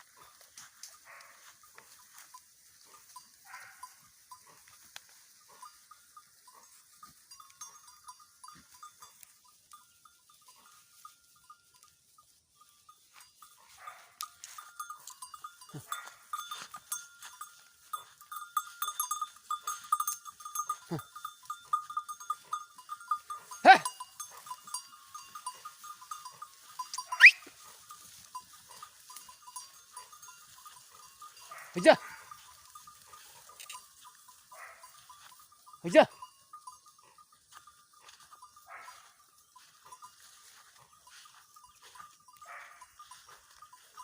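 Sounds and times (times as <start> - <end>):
rustling and crackling twigs: 0.0 - 7.6, 24.0 - 35.7
steady high ringing: 1.6 - 44.0
goat bleats: 20.6 - 21.3.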